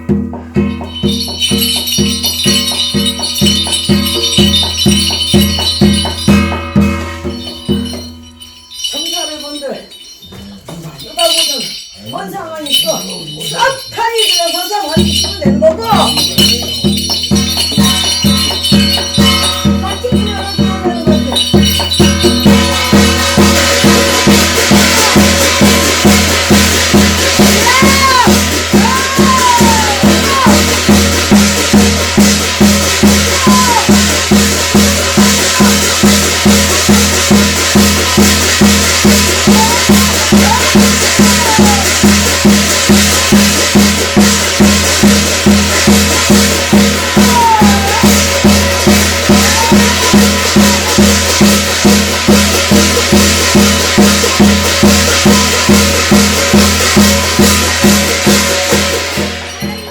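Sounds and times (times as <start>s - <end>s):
drums and hand cymbals beating: 0.0s - 59.9s.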